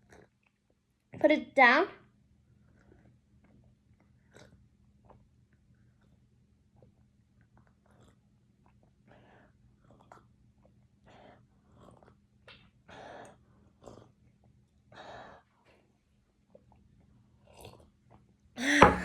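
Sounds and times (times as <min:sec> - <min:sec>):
loud voiced exhale: 0:18.6 - 0:19.0.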